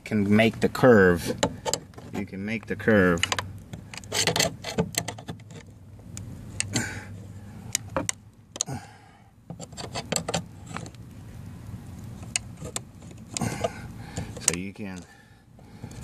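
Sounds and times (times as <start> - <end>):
screwdriver prying metal strap: 3.2 - 5.7, 9.5 - 10.9, 12.6 - 15.1.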